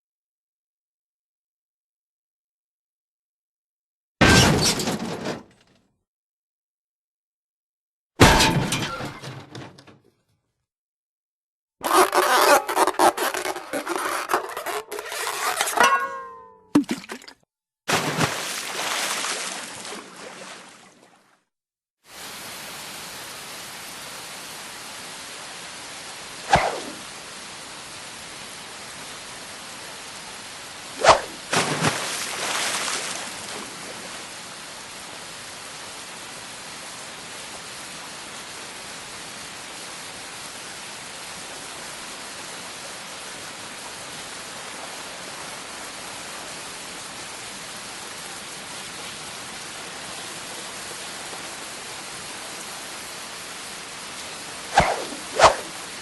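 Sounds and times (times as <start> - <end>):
steady hiss like rain: 22.0 - 56.0.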